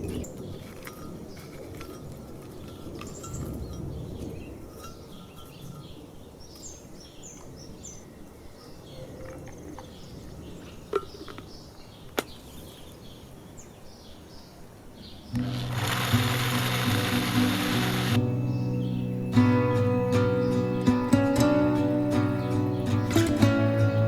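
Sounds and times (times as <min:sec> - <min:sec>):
small birds chirping: 0:00.0 - 0:24.0
acoustic guitar music: 0:15.4 - 0:24.0.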